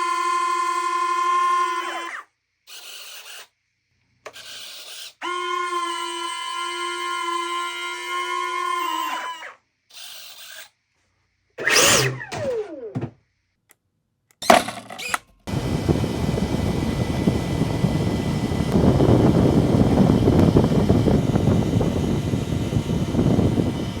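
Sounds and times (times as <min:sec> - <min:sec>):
jet engine rushing with high whine: 0:15.5 - 0:24.0.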